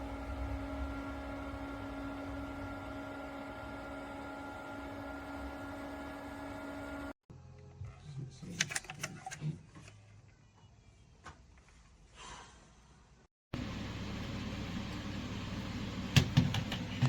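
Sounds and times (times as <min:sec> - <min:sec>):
fan motor hum: 0:00.0 - 0:07.2, 0:13.6 - 0:17.0.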